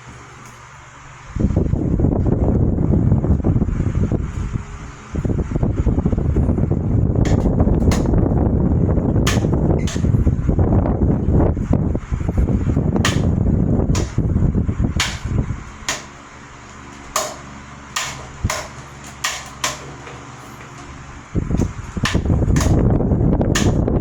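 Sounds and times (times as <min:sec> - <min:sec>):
fan air rushing over microphone: 0:00.0 - 0:24.0
fan motor humming: 0:00.0 - 0:24.0.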